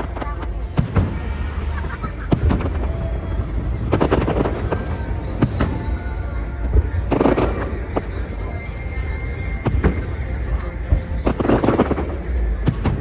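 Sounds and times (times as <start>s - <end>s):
fireworks bangs: 0.0s - 8.4s
fireworks crackling: 0.0s - 13.0s
low rumble: 0.0s - 13.0s.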